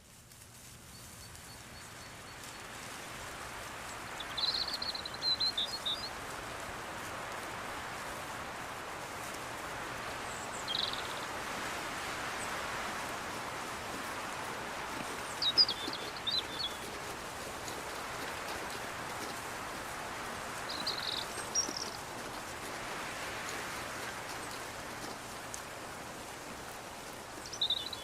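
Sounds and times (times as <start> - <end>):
wind rushing through leaves: 0.0 - 28.0
bird trilling: 14.8 - 17.0, 20.6 - 22.3.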